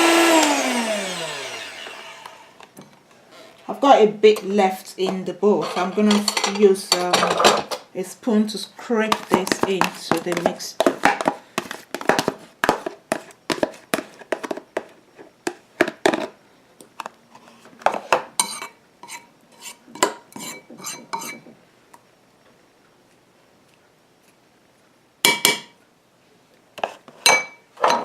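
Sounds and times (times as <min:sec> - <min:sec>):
spoon scraping a bowl: 0:17.9 - 0:21.4.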